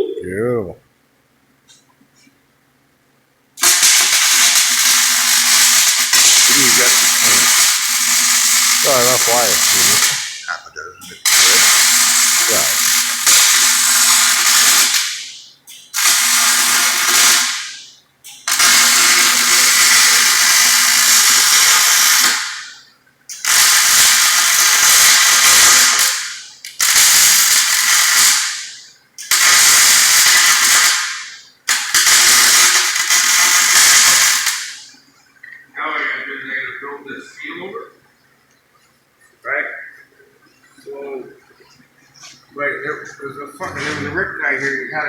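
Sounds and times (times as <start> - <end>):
welder arc crackling: 3.6 - 35.0.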